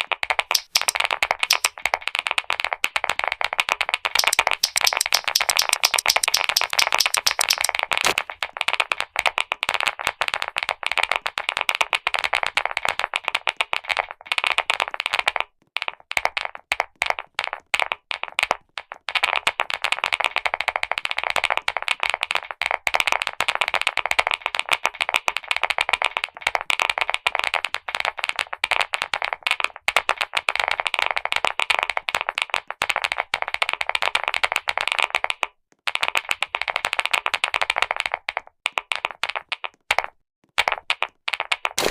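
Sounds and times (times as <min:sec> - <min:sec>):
mechanical keyboard typing: 0:00.5 - 0:01.7, 0:04.2 - 0:08.2.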